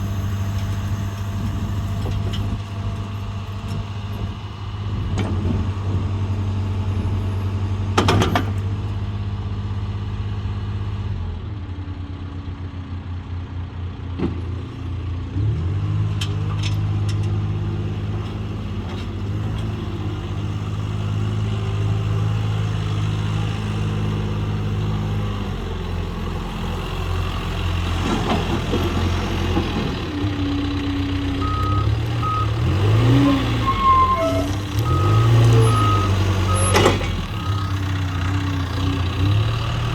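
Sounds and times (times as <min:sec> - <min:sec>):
diesel engine running: 0:00.0 - 0:39.9
reversing alarm beeping: 0:31.4 - 0:37.8.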